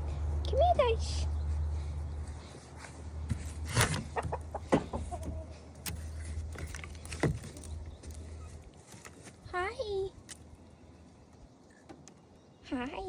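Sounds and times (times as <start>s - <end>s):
chickens clucking: 3.9s - 6.1s.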